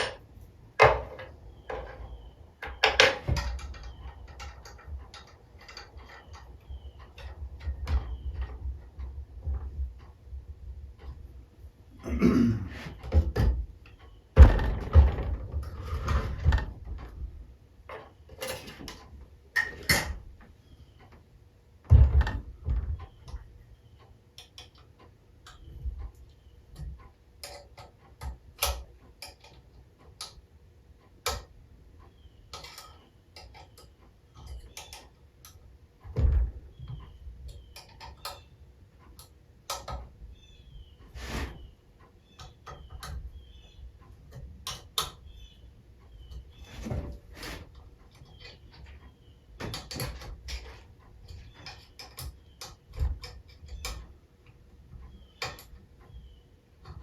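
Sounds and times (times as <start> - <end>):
tools clicking and tapping: 0.0 - 12.1, 12.8 - 57.0
heavier knocks: 14.4 - 15.6.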